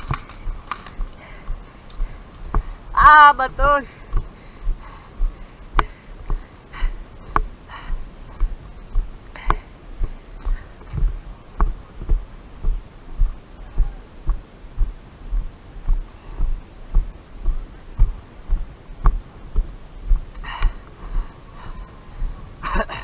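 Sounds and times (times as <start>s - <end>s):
sharp clicks: 0.0s - 1.1s
footsteps thudding: 0.0s - 2.8s, 3.6s - 6.5s, 7.3s - 22.4s.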